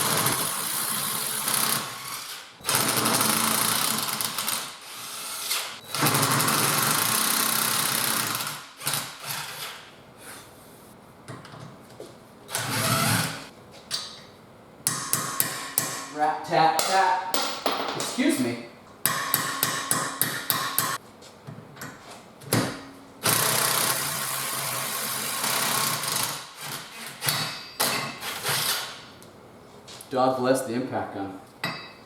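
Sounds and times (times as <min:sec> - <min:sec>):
impact wrench hammering: 0:14.9 - 0:21.0.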